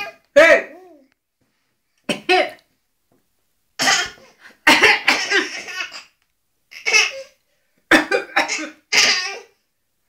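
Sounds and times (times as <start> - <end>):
fake coughs: 3.8 - 5.8, 7.9 - 9.2
baby laughing: 4.9 - 7.4, 8.5 - 9.5.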